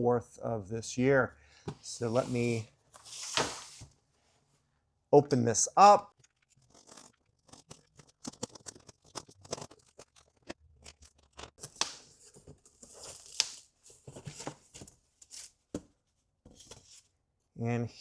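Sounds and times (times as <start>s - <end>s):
cardboard scraping and rustling: 1.8s - 3.9s, 6.5s - 15.9s.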